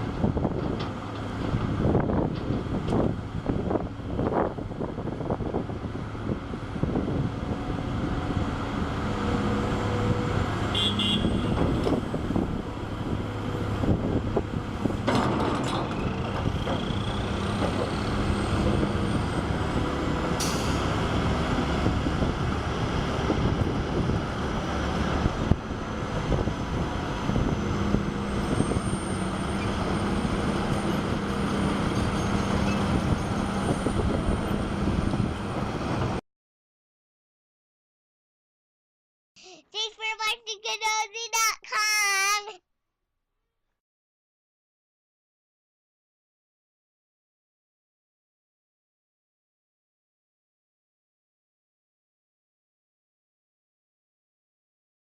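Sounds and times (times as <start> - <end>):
diesel excavator droning: 0.0 - 36.2.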